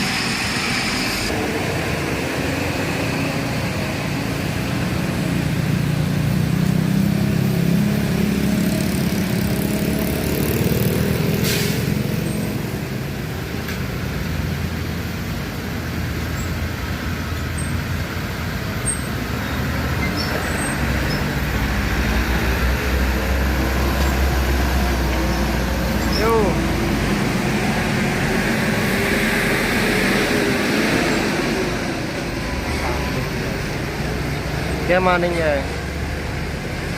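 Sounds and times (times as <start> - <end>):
low drone: 0.0 - 9.9, 21.2 - 36.9
heavy vehicle engines rumbling: 0.0 - 36.9
road traffic: 0.0 - 36.9.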